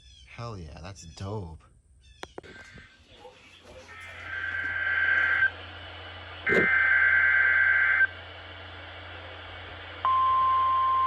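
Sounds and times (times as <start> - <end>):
radio hiss: 2.4 - 10.6
steady warning alarm tone: 3.9 - 5.6, 6.5 - 8.1.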